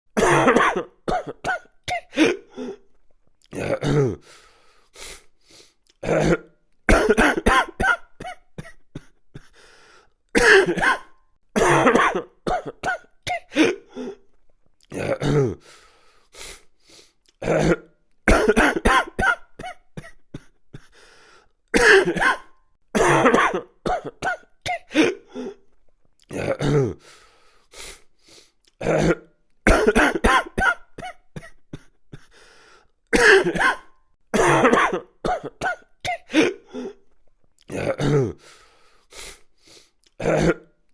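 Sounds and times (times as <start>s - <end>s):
person coughing: 0.2s - 2.8s, 3.6s - 4.2s, 6.0s - 9.6s, 10.4s - 14.2s, 14.9s - 15.6s, 17.4s - 20.9s, 21.7s - 25.6s, 26.3s - 27.0s, 28.8s - 32.3s, 33.2s - 37.0s, 37.7s - 38.4s, 40.2s - 40.7s.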